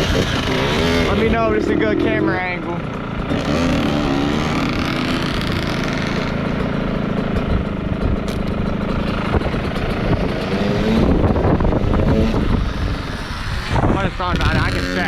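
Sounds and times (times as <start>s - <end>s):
dirt bike engine revving: 0.0s - 15.0s.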